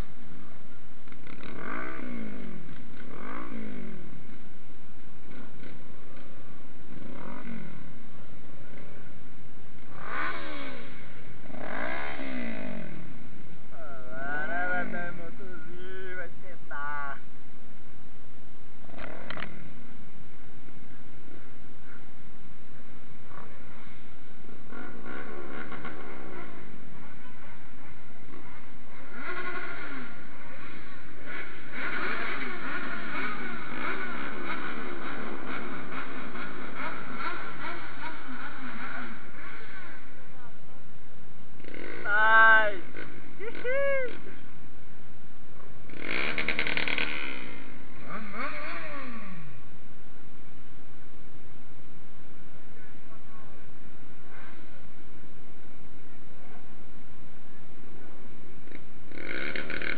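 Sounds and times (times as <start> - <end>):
motorcycle engine revving: 0.0 - 59.9
riding noise: 0.0 - 59.9.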